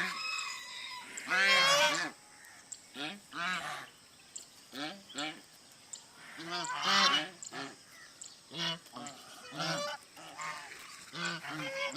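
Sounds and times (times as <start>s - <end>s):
goose honking: 1.2s - 2.2s, 6.2s - 7.8s, 8.5s - 11.9s.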